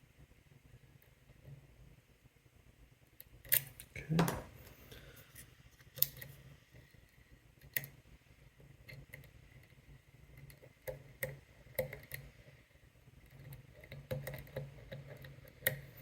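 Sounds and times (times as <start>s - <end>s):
lock pick clicking on pins: 3.4s - 3.9s.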